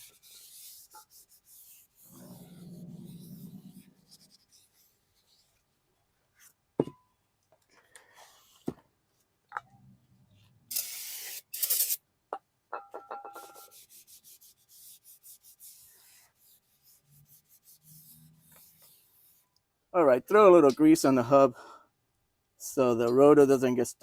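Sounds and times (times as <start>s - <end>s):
rubbing strokes wiping rotor: 0.0s - 5.6s, 13.4s - 19.5s
aerosol spray hissing: 10.7s - 11.9s.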